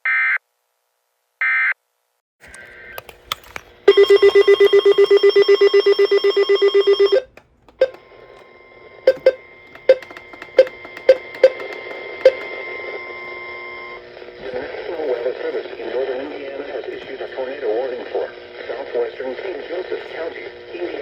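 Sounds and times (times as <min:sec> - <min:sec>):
rapidly pulsing alarm beeping: 0:03.9 - 0:14.0
sharp irregular clicks: 0:09.1 - 0:12.6.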